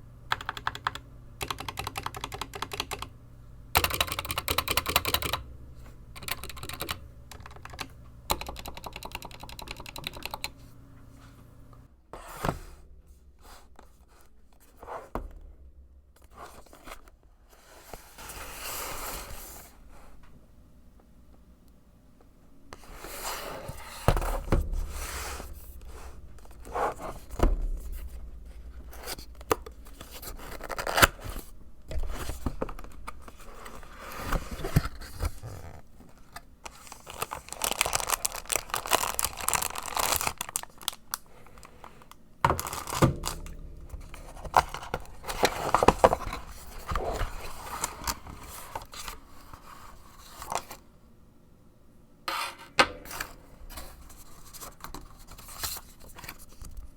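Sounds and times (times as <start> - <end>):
cardboard and plastic rustling: 22.8 - 50.8, 53.2 - 56.9.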